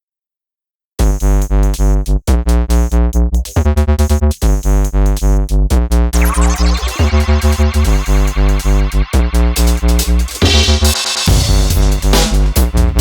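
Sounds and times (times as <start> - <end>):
pulsing synth bass beat: 1.0 - 13.0
rising synth sweep: 6.2 - 12.0.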